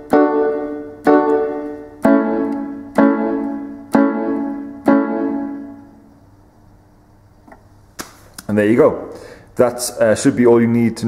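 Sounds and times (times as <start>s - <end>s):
electronic piano chords: 0.0s - 6.5s.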